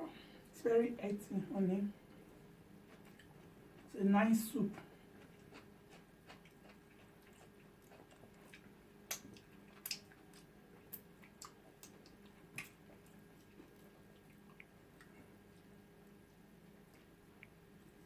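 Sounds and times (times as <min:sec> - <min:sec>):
low steady hum: 0:00.0 - 0:18.0
wet chewing and smacks: 0:02.8 - 0:04.0, 0:04.8 - 0:18.0.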